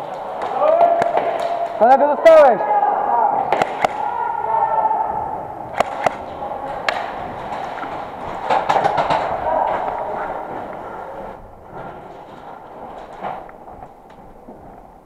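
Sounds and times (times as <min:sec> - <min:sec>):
airsoft guns firing: 0:03.4 - 0:04.2, 0:05.7 - 0:10.5.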